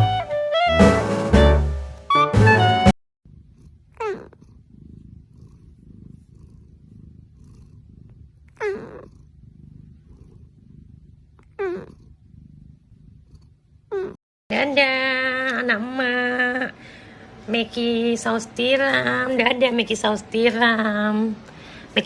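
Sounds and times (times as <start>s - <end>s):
cat purring: 3.3s - 14.2s.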